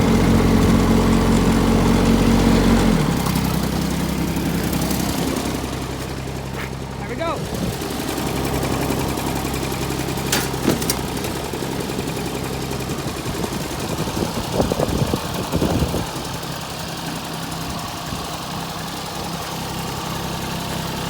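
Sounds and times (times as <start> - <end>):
lawn tractor engine running: 0.0 - 21.0
irregular rattling: 10.0 - 11.6.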